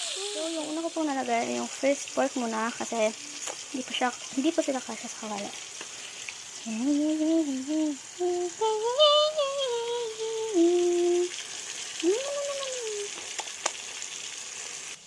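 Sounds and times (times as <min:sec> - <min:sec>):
person humming: 0:00.0 - 0:01.0, 0:06.6 - 0:11.4, 0:12.0 - 0:13.2
pork frying in hot oil: 0:00.0 - 0:15.0.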